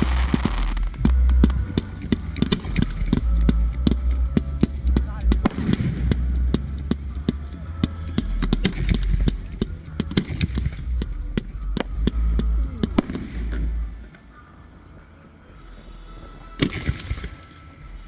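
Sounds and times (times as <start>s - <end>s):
fireworks cracking: 0.0s - 14.4s
low rumble: 0.0s - 14.4s.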